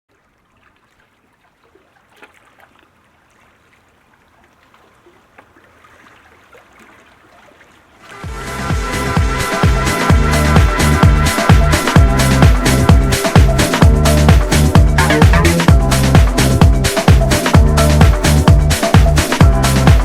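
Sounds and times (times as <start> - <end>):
faint trickling water: 0.1 - 8.3
electronic dance music: 8.2 - 20.0.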